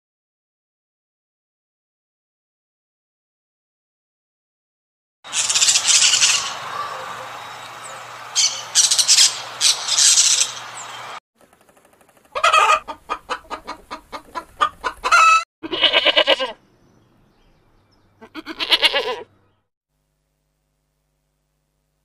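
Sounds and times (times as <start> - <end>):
chicken drawn-out calls: 5.3 - 11.2, 12.2 - 16.6, 18.2 - 19.4
chicken clucking: 12.3 - 15.4.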